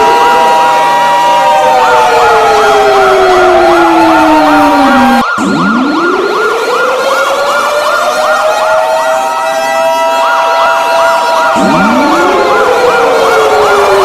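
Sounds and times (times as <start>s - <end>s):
fast yelping siren tone: 0.0s - 14.0s
wailing emergency siren: 0.0s - 14.0s.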